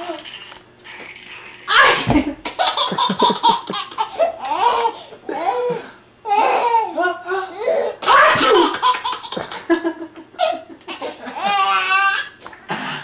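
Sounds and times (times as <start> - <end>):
baby belly laughing: 0.0 - 5.5, 7.7 - 12.3
sneeze: 8.0 - 8.7.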